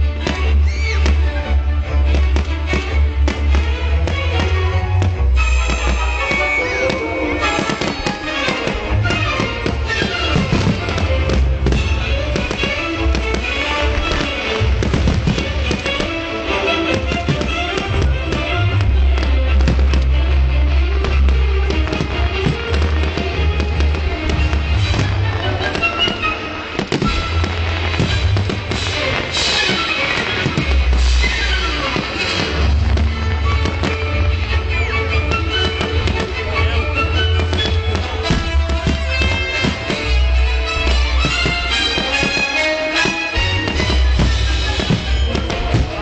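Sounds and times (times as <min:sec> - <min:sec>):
fireworks bursting and crackling: 0:00.0 - 0:46.0
loud music: 0:00.0 - 0:46.0
deep booms: 0:08.6 - 0:25.8.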